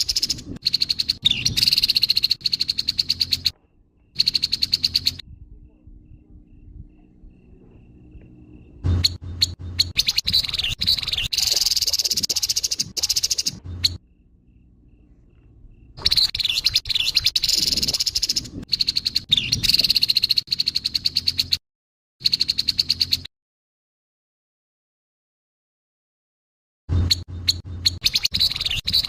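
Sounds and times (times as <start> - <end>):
bird harsh rattling calls: 0.0 - 3.6, 4.2 - 5.2, 9.0 - 14.0, 16.0 - 21.6, 27.1 - 29.0.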